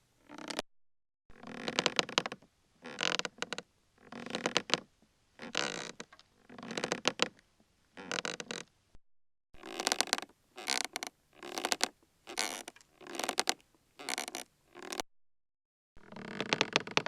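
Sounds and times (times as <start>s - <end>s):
rocking chair creaking: 1.4s - 4.8s, 5.4s - 7.3s, 8.0s - 8.6s, 9.6s - 15.0s, 16.0s - 17.0s.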